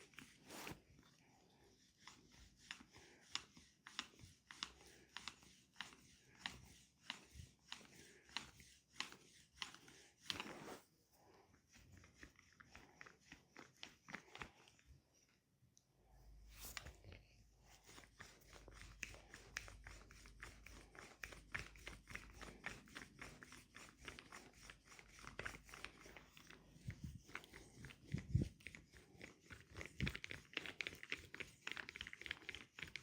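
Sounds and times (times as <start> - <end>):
hands massaging skin: 1.6 - 10.9, 11.5 - 15.3, 16.5 - 33.0.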